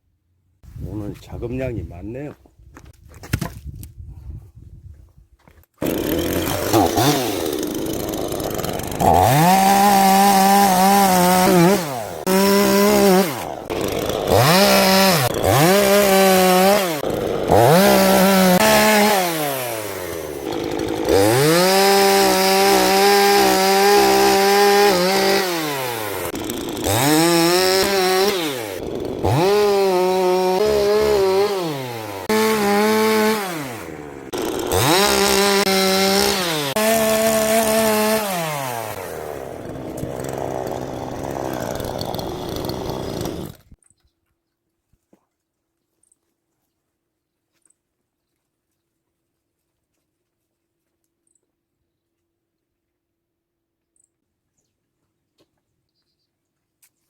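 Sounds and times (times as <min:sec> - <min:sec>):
chainsaw cutting logs: 0:05.8 - 0:43.8.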